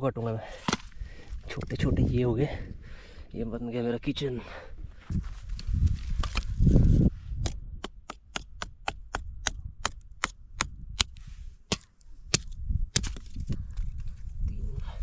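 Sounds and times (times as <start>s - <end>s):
dry sticks being chopped: 7.4s - 13.4s.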